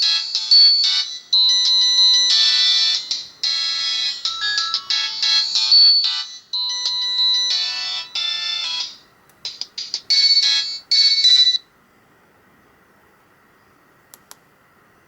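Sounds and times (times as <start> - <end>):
polyphonic ringtone melody: 0.0 - 9.0, 9.6 - 11.6
faint high whine: 11.6 - 14.1.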